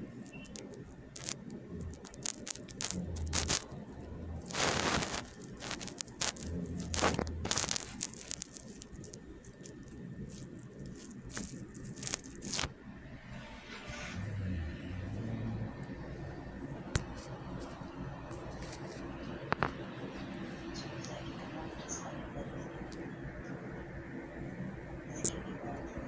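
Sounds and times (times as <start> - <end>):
clicks and rustles: 0.0 - 12.7.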